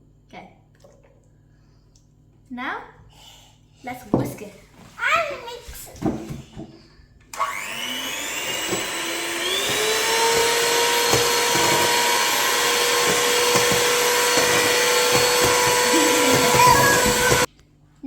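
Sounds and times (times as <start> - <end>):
electric mixer whirring: 7.4 - 17.5.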